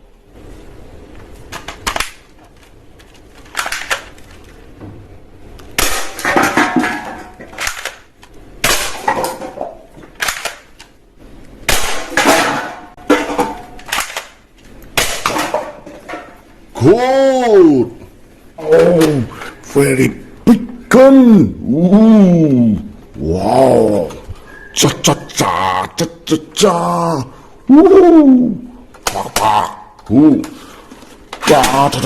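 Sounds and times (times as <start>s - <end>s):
plastic toys clattering and clicking: 1.4s - 4.7s, 6.2s - 11.0s, 12.2s - 16.4s, 28.9s - 32.0s.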